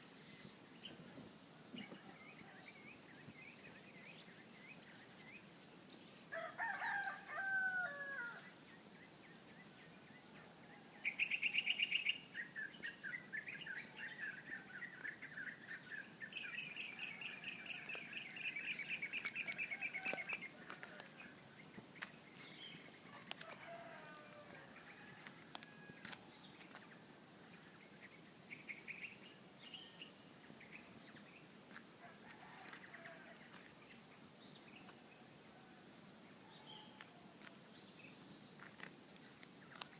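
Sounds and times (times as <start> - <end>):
rooster crowing: 6.3 - 8.4, 19.4 - 21.1, 23.1 - 26.0.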